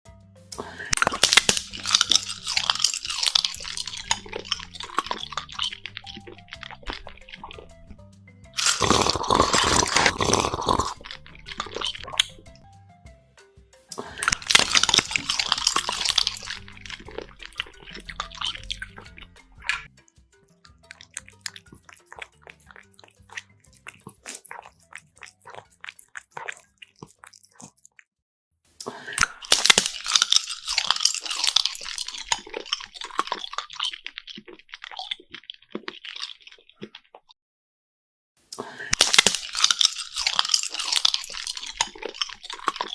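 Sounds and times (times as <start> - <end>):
faint background music: 0.1 - 27.4
wet chewing and smacking: 0.6 - 12.7, 13.9 - 28.2, 29.2 - 37.4, 38.9 - 42.9.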